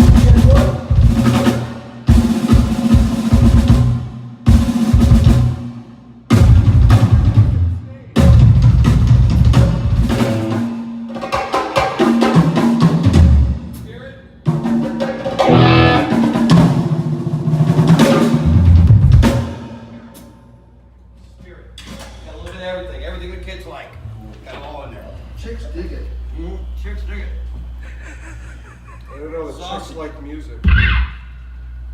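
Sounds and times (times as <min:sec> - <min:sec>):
rock band playing: 0:00.0 - 0:13.6, 0:14.6 - 0:20.0
drum kit bursts: 0:00.0 - 0:20.3, 0:30.6 - 0:31.8.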